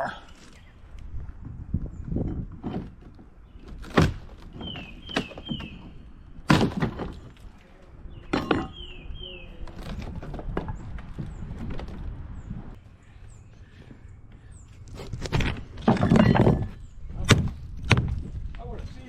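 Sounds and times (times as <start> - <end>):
pry bar knocks and cracks on wood: 2.6 - 7.4, 15.2 - 18.2.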